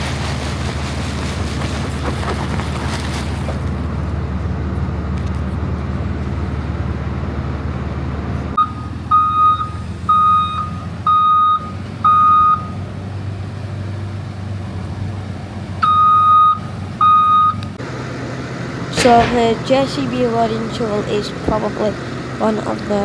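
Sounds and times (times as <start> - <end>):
diesel engine running: 0.0 - 23.0
reversing alarm beeping: 8.6 - 12.8, 15.8 - 17.6.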